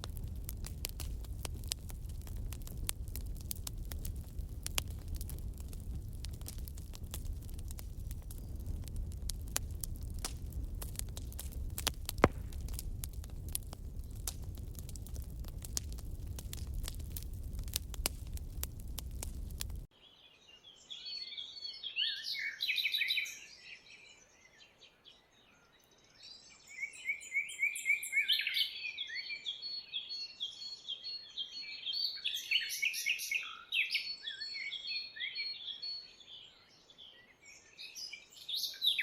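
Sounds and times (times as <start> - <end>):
wood fire crackling: 0.0 - 19.9
birds singing: 20.0 - 39.0.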